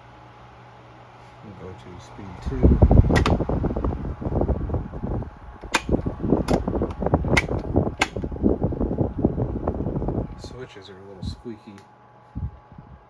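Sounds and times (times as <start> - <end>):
fan clicking: 2.2 - 10.6
table fan air rushing: 2.4 - 10.6.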